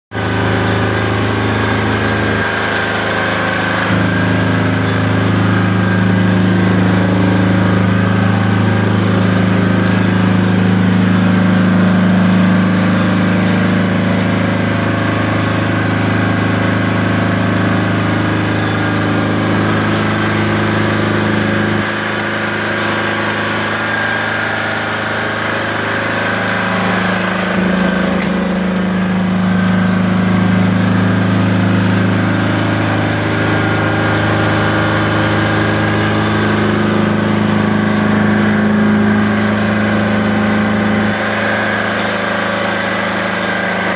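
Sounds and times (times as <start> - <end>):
diesel generator running: 0.1 - 43.9.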